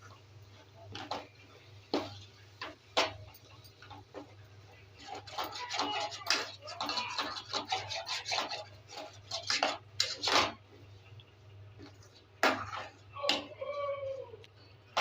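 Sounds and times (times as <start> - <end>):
spoon scraping a cooking pan: 5.0 - 10.6.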